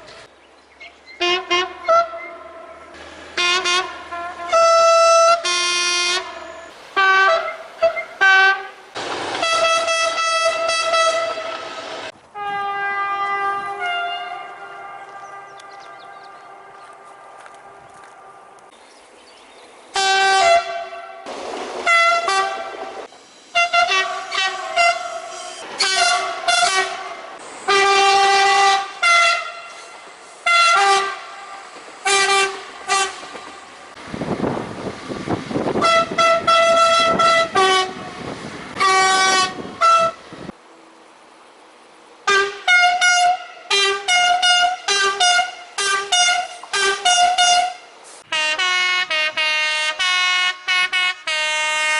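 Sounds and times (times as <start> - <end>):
two-tone train horn: 1.2 - 8.8, 9.4 - 11.8, 12.4 - 18.6, 20.0 - 33.6, 35.8 - 40.3, 42.2 - 51.9
loud rushing noise: 8.9 - 9.8.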